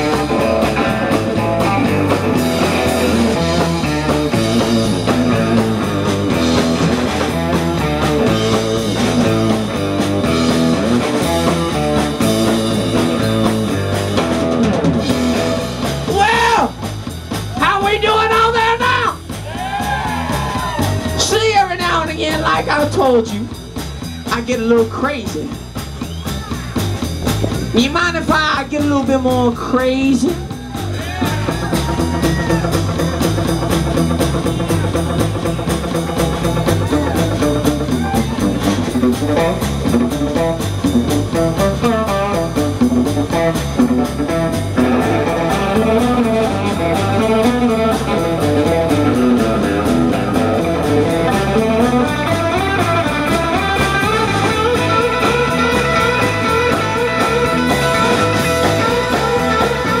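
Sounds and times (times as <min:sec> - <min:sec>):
rhythm section beat: 0:00.0 - 1:00.0
guitar solo: 0:18.3 - 0:22.6, 0:30.1 - 1:00.0.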